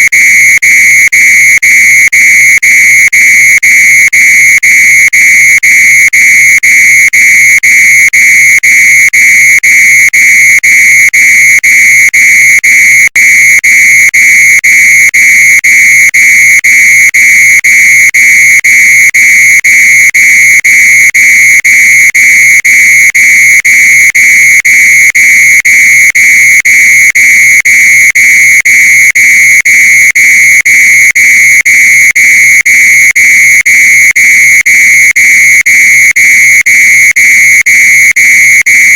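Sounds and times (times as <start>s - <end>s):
fire alarm beeping: 0.0s - 38.9s.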